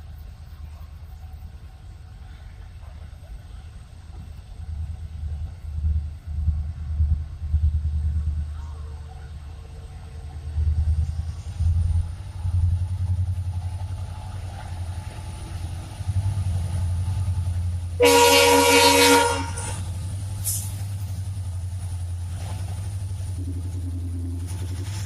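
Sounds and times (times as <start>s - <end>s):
diesel locomotive engine rumbling: 0.0s - 25.0s
locomotive horn: 18.0s - 19.9s.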